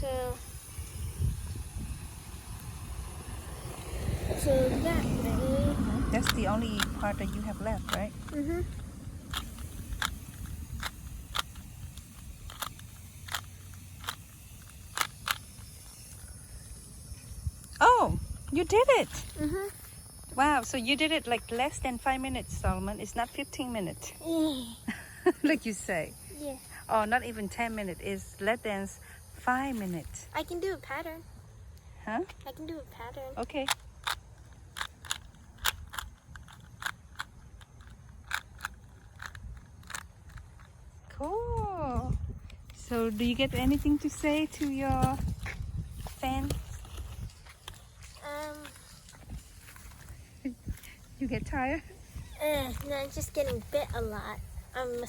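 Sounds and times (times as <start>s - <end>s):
puzzle cube clicking as turned: 6.2s - 15.7s, 33.6s - 40.8s.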